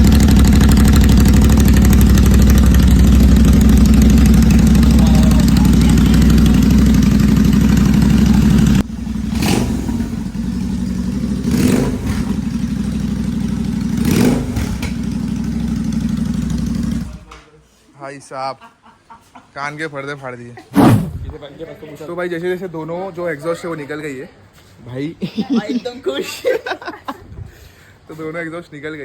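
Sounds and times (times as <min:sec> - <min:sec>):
loud motorcycle engine running: 0:00.0 - 0:17.2.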